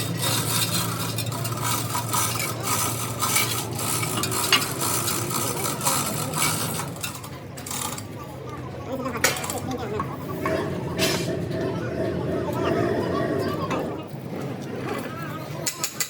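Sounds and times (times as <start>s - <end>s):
metal parts clinking and scraping: 0.0s - 8.1s.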